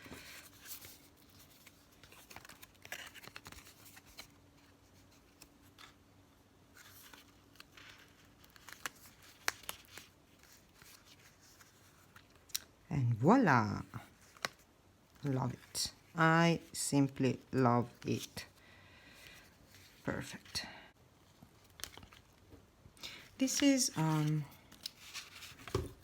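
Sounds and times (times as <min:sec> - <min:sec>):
paper rustling and scraping: 0:00.0 - 0:06.0, 0:23.1 - 0:26.0.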